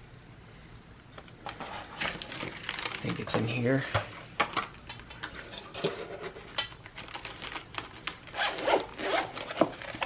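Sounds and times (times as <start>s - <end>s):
items clattering: 1.2s - 10.0s
rummaging through container: 1.4s - 8.3s.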